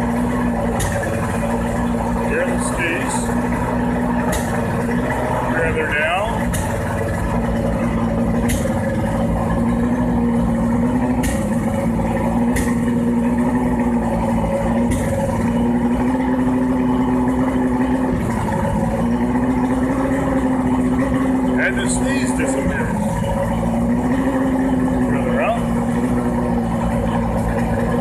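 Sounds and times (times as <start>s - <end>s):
outboard motor running: 0.0s - 28.0s
sharp engine pop: 0.6s - 1.5s, 2.5s - 5.1s, 6.4s - 7.4s, 8.3s - 9.2s, 11.0s - 13.1s, 14.8s - 16.2s.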